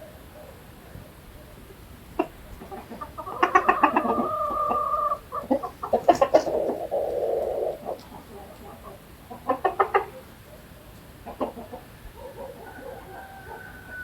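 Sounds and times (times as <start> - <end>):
chickens clucking: 0.1 - 14.0
chicken long call: 2.2 - 10.4, 11.3 - 14.0.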